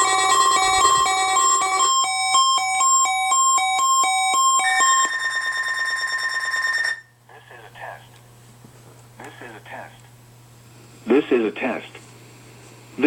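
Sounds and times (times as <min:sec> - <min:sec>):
electronic alert tones: 0:00.0 - 0:07.0.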